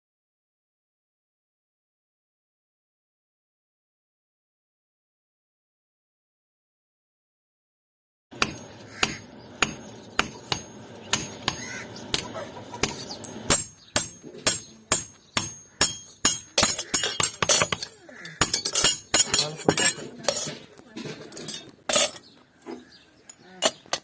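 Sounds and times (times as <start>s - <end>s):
hammer striking steel on anvil: 8.3s - 20.6s.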